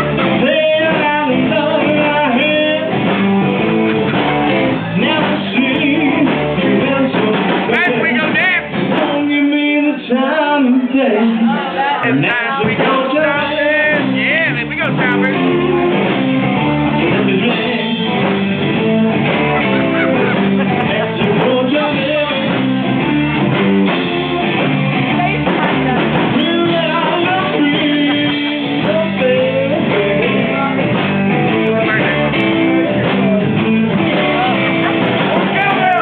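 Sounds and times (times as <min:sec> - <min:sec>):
rock and roll song: 0:00.0 - 0:36.0.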